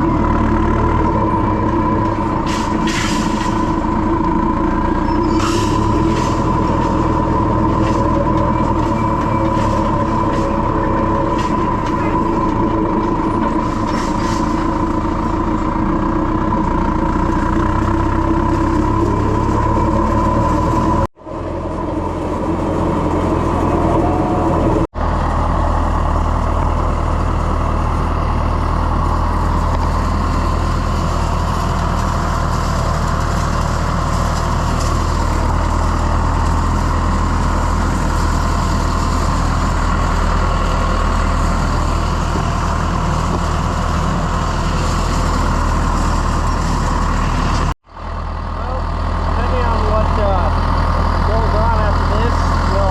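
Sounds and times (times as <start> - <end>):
tractor engine running: 0.0 - 52.9
high whine: 18.7 - 31.4.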